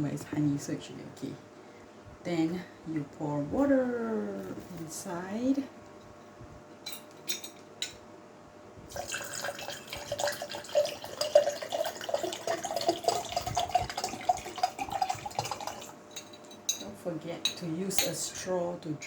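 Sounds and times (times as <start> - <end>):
water pouring into a glass: 8.9 - 16.0.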